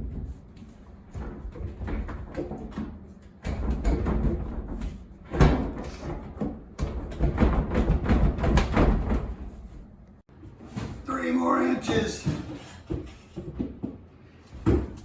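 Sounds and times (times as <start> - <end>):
door knocking and thudding: 1.2 - 9.5.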